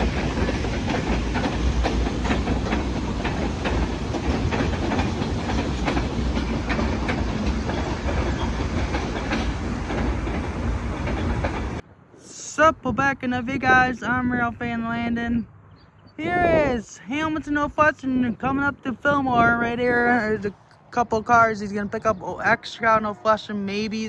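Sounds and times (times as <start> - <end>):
wheels clicking over rail joints: 0.0 - 11.8
train rumble: 0.0 - 15.0, 16.2 - 20.6.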